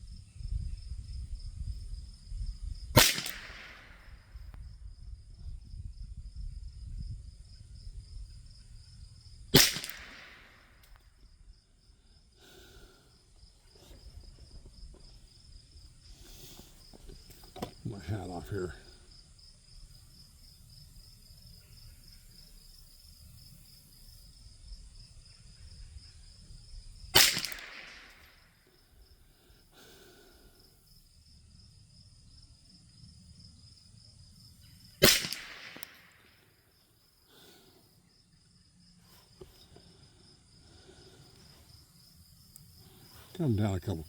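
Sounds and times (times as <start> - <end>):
crickets chirping: 0.0 - 44.0
rifle shots with echo: 3.0 - 4.1, 9.6 - 10.8, 27.2 - 28.4, 35.0 - 36.3.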